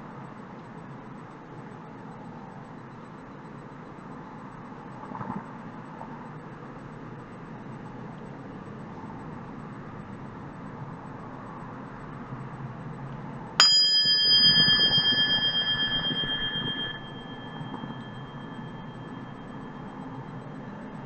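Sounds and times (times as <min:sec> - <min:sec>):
bell ringing: 0:13.6 - 0:20.3
faint high tone: 0:13.6 - 0:21.0.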